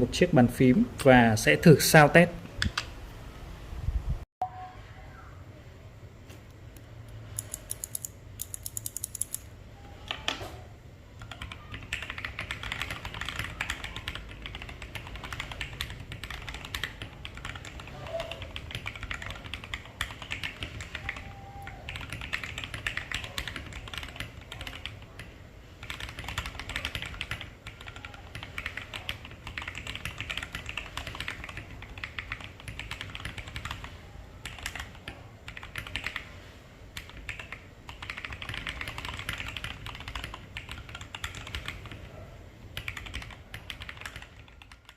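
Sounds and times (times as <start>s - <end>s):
mechanical keyboard typing: 7.3s - 9.5s, 11.2s - 36.3s, 37.0s - 42.1s, 42.8s - 44.9s.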